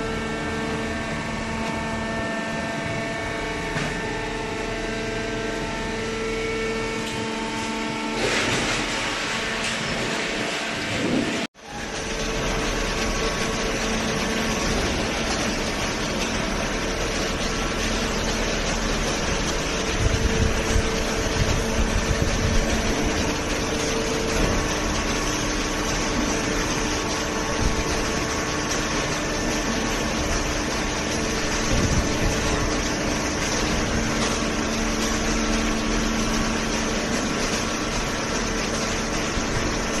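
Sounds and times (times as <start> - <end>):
hydraulic pump humming: 0.0 - 40.0.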